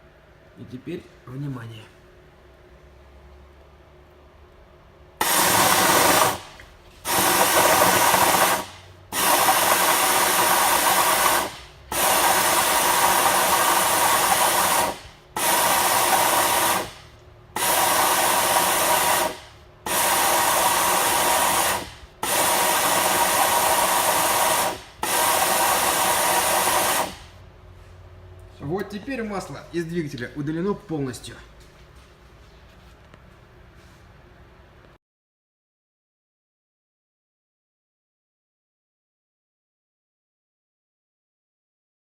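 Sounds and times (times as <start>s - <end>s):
compressed air hissing: 5.2s - 27.4s.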